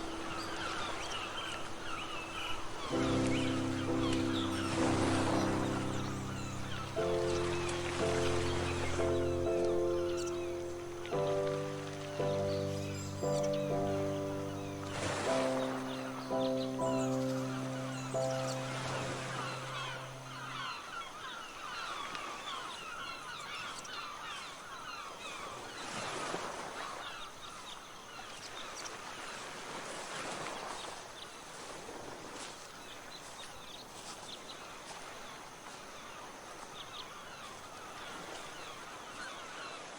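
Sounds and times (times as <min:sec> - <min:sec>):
birds chirping: 0:00.0 - 0:22.0.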